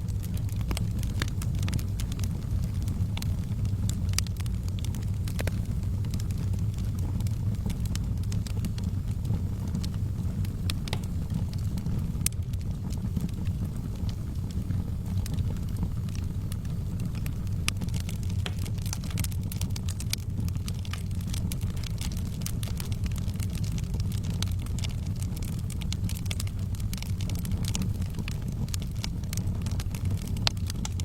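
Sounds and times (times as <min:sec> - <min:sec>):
low rush of flames: 0:00.0 - 0:31.0
wood fire pops and snaps: 0:00.0 - 0:31.0.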